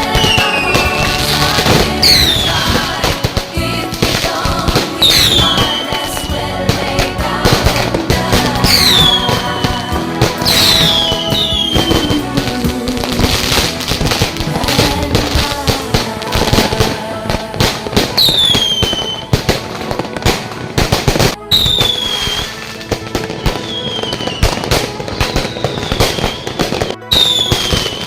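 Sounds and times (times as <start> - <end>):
fireworks whistles falling in pitch: 0.0 - 3.2, 5.0 - 6.4, 8.6 - 12.3, 18.1 - 19.5, 20.2 - 28.0
fireworks bangs and crackles: 0.0 - 28.0.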